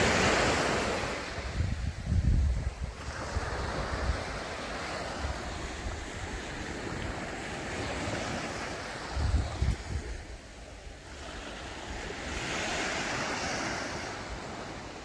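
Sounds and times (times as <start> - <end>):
wind buffeting microphone: 0.0 - 10.6
sea waves washing onto beach: 0.0 - 15.0.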